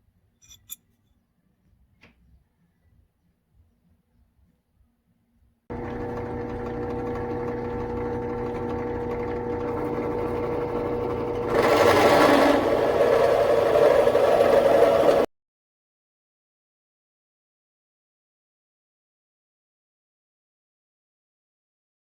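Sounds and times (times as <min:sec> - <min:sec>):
power tool cutting wood: 0:05.7 - 0:15.3.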